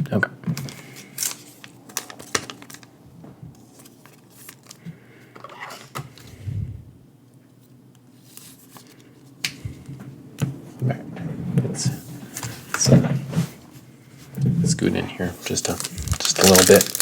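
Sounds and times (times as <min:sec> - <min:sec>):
cards clicking and rustling: 0:00.5 - 0:02.9, 0:03.6 - 0:04.8, 0:15.5 - 0:17.0.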